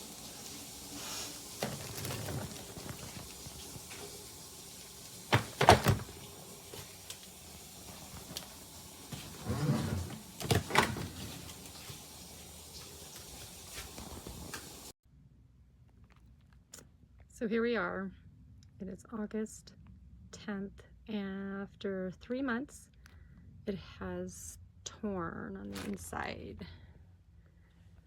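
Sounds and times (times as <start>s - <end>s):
suitcase clunks and knocks: 5.3s - 6.2s.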